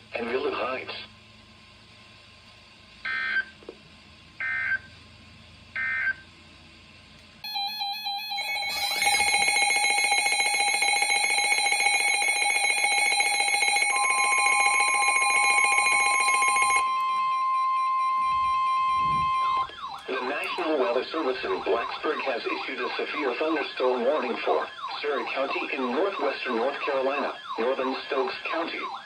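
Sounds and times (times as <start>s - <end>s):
higher steady alert tone: 7.4s - 20.2s
steady electronic alert tone: 7.4s - 20.6s.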